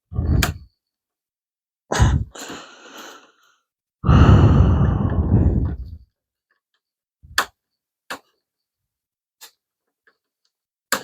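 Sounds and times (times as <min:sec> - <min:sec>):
man breathing heavily and sighing: 0:01.9 - 0:06.0.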